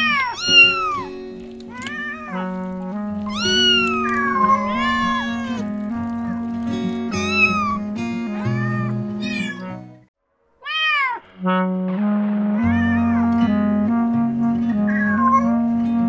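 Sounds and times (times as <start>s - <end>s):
cat meowing: 0.0s - 5.7s, 7.2s - 9.8s, 10.6s - 11.3s, 12.6s - 13.4s, 14.8s - 15.6s
gentle background music: 0.0s - 10.1s, 11.4s - 16.0s.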